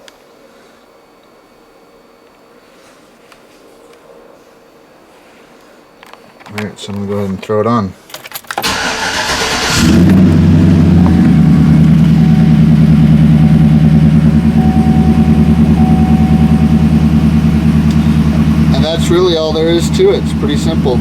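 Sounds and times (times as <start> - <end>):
engine starter cranking: 8.6 - 21.0
engine revving and idling: 9.0 - 21.0.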